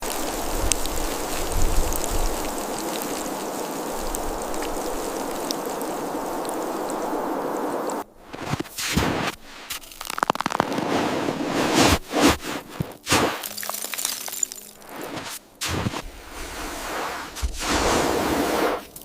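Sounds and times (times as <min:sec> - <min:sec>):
snow ticking: 0:00.0 - 0:19.0
snowstorm hiss: 0:00.0 - 0:19.0.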